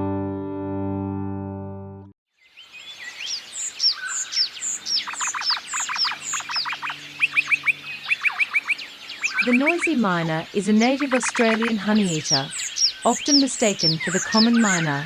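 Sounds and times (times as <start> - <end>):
distorted guitar music: 0.0 - 2.1
birds calling sharp notes: 2.4 - 15.0.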